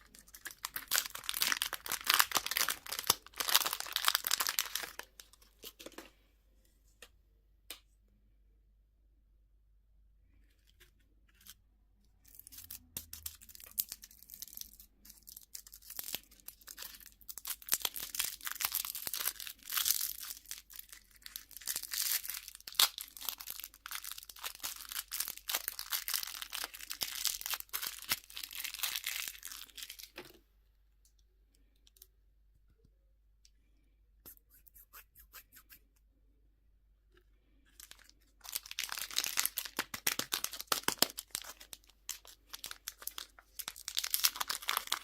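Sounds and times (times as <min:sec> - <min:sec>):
candy wrapper tearing and crinkling: 0:00.0 - 0:06.0, 0:10.6 - 0:30.2, 0:37.7 - 0:45.0.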